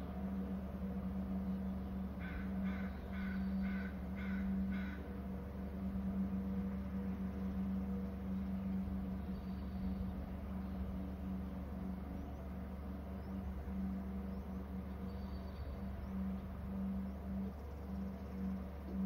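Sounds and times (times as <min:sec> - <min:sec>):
low electrical hum: 0:00.0 - 0:19.0
crow cawing: 0:02.2 - 0:05.0.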